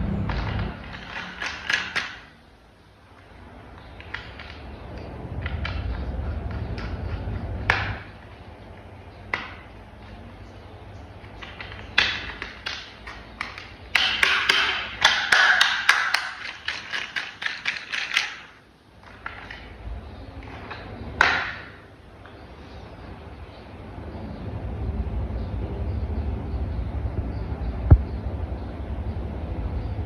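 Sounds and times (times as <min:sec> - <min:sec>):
plastic parts rubbing: 0:00.2 - 0:02.3, 0:03.6 - 0:10.2, 0:11.2 - 0:22.4
plastic parts clicking: 0:00.3 - 0:02.3, 0:11.2 - 0:22.4.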